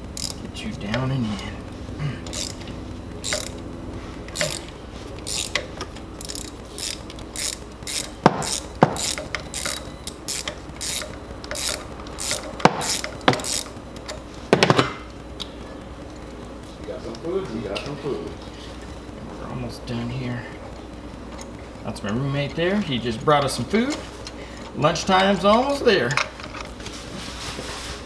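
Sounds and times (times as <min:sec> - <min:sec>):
ratchet wrench clicking: 0:00.0 - 0:01.6, 0:02.2 - 0:16.4
sharp metal knocks: 0:08.0 - 0:09.7, 0:11.0 - 0:13.6.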